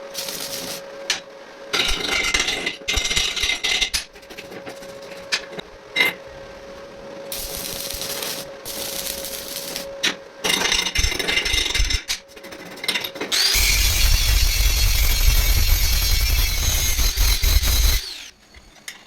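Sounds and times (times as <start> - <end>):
loud steady tool noise: 13.3 - 18.7.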